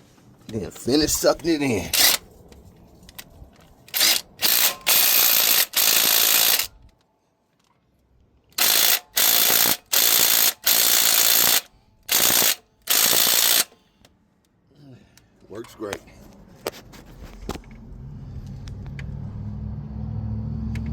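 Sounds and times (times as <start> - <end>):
ratchet clicking: 1.9 - 2.2, 3.9 - 6.7, 8.6 - 13.7.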